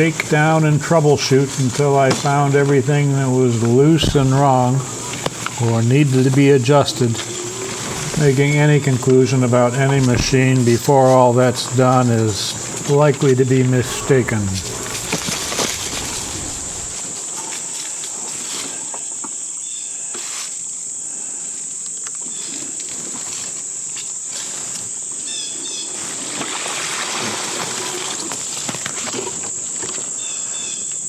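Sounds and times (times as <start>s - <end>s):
insects trilling: 0.0s - 31.0s
even rushing noise: 7.0s - 17.0s.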